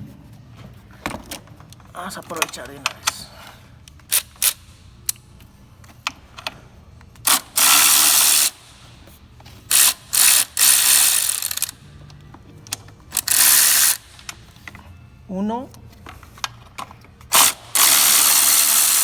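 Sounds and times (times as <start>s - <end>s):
ratchet wrench clicking: 4.0s - 5.2s, 7.2s - 8.7s, 9.7s - 11.8s, 13.1s - 14.4s, 17.3s - 19.0s.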